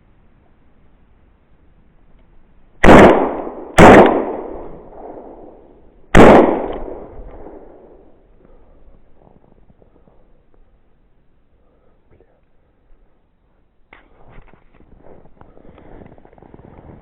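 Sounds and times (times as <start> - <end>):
gunshots echoing: 2.8 - 8.2.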